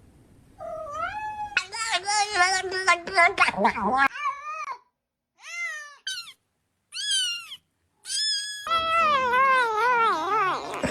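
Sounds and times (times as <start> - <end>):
cat meowing: 0.6 - 1.9, 5.4 - 10.9.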